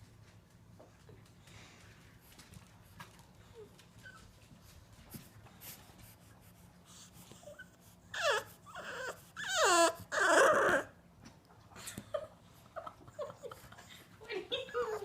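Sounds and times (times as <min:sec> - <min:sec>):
dog whining: 0:07.4 - 0:11.0.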